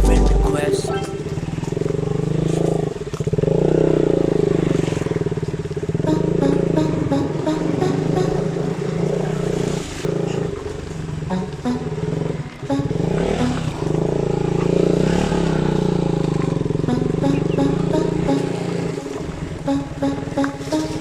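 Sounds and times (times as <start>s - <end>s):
motorcycle engine running: 1.4s - 6.1s.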